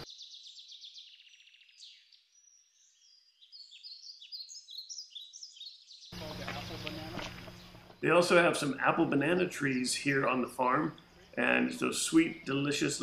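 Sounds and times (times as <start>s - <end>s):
small birds chirping: 0.0s - 13.0s.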